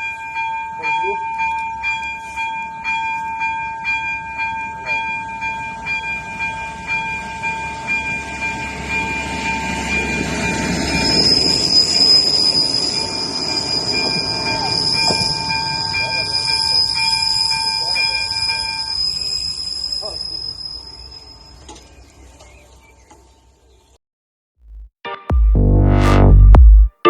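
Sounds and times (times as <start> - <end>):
level crossing bell ringing: 0.0 - 10.8
train rumble: 5.1 - 21.6
high wheel squeal: 10.4 - 22.4.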